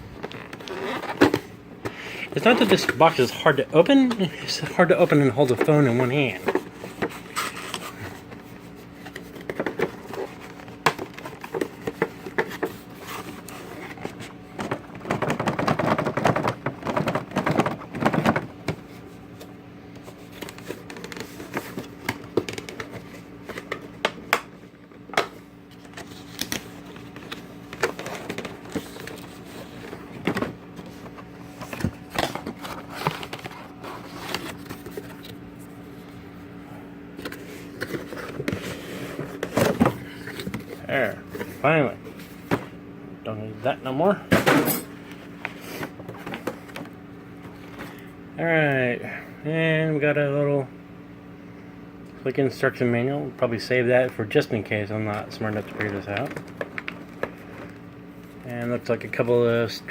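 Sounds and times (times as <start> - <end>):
faint steady hum: 0.0 - 59.9
scraping and rustling: 25.7 - 36.4, 37.2 - 42.8.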